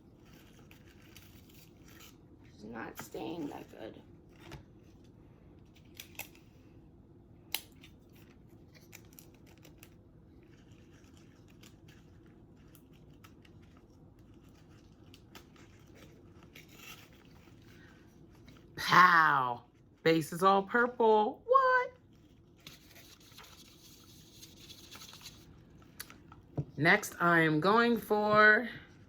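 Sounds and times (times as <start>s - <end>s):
scratching and rustling: 0.0s - 5.1s, 8.1s - 18.8s, 22.0s - 26.4s.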